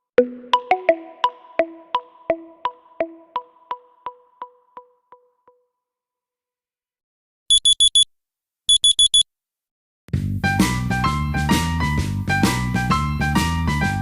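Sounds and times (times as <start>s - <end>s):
quick high electronic beeps: 7.5s - 8.1s, 8.7s - 9.2s.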